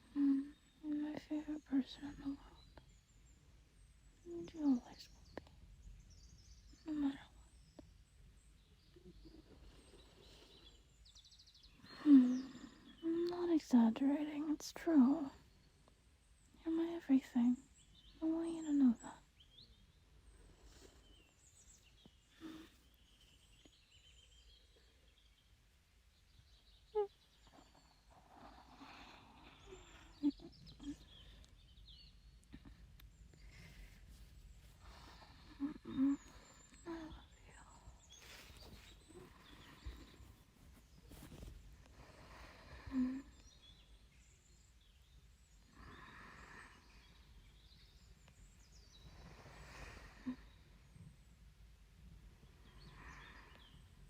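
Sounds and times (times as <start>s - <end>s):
woman whispering: 0.0s - 2.9s, 4.2s - 5.7s, 6.7s - 7.6s, 11.9s - 15.5s, 16.6s - 19.3s, 26.9s - 31.3s, 34.8s - 40.4s
faint bird chirps: 0.0s - 54.0s
soft breathing: 9.0s - 13.8s, 20.0s - 25.4s, 27.4s - 44.6s, 45.5s - 51.3s, 52.3s - 54.0s.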